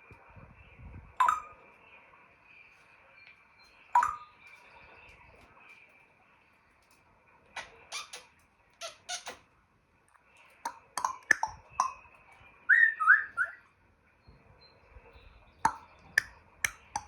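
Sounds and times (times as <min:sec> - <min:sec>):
parrot pops and clicks: 0:04.0 - 0:04.2, 0:10.7 - 0:12.0, 0:15.7 - 0:17.0
parrot whistling: 0:12.7 - 0:13.6.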